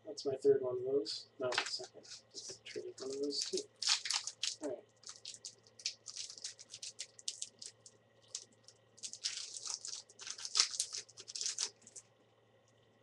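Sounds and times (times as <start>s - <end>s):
foil pack crinkling and tearing: 2.4s - 12.0s.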